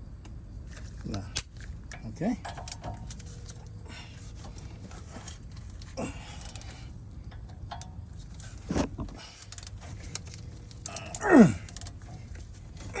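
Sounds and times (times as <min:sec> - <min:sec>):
small metal knocks: 0:01.9 - 0:03.7, 0:05.3 - 0:12.9
ratchet clicks: 0:05.5 - 0:06.7, 0:09.4 - 0:12.0.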